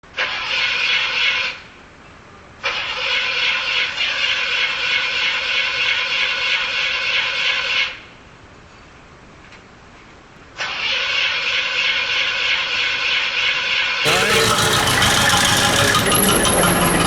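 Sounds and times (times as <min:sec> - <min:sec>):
car engine high-pitched revving: 0:14.1 - 0:17.0.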